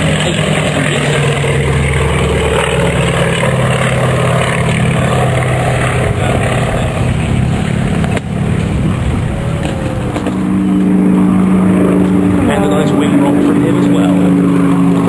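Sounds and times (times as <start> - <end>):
propeller aircraft engines droning: 0.0 - 15.0.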